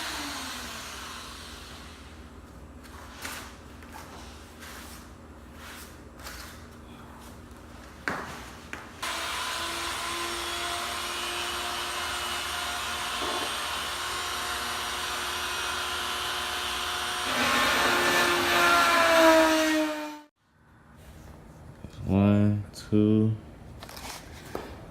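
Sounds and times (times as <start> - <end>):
rotary tool high whine: 0.0 - 2.3, 9.0 - 20.3.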